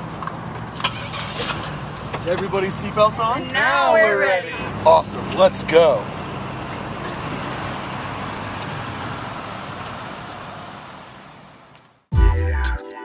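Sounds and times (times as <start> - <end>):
car road and engine noise: 0.0 - 12.1
electronic music: 12.1 - 13.0.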